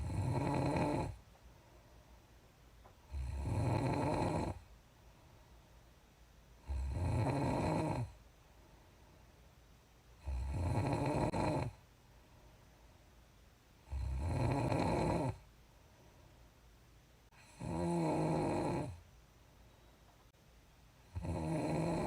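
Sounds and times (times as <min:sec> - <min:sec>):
woman snoring with lip puffs: 0:00.0 - 0:01.2, 0:03.1 - 0:04.6, 0:06.6 - 0:08.1, 0:10.2 - 0:11.8, 0:13.9 - 0:15.4, 0:17.4 - 0:19.0, 0:21.1 - 0:22.0.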